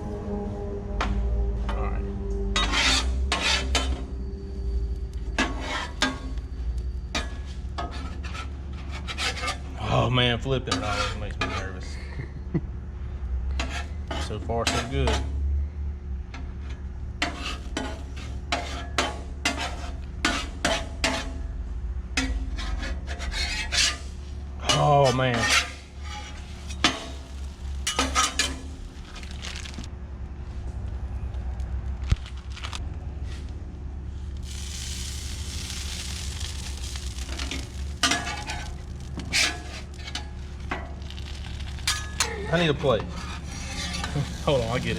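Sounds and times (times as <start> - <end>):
steady low hum: 0.0 - 44.9
metal spatula scraping griddle: 2.5 - 4.4, 5.2 - 12.0, 13.5 - 15.4, 16.4 - 21.5, 22.2 - 29.4, 34.4 - 44.9
egg frying: 25.9 - 29.8, 34.4 - 42.2.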